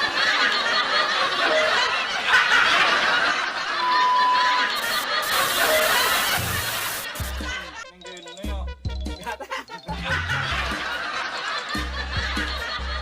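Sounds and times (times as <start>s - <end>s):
people laughing: 0.0s - 8.3s, 9.1s - 13.0s
steady beep: 3.8s - 4.8s, 5.4s - 6.2s.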